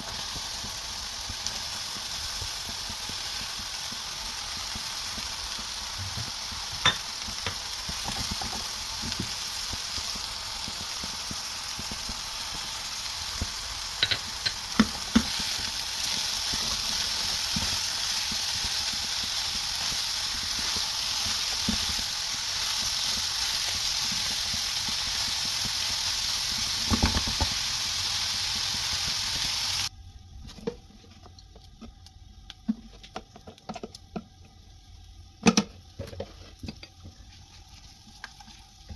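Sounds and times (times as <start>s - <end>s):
food sizzling in hot oil: 0.0s - 29.9s.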